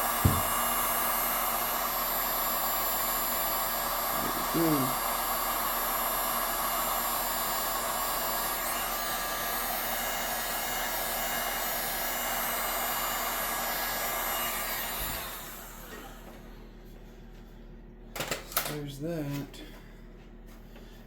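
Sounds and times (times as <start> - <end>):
heat gun blowing: 0.0 - 16.5
fan winding down: 0.0 - 16.8.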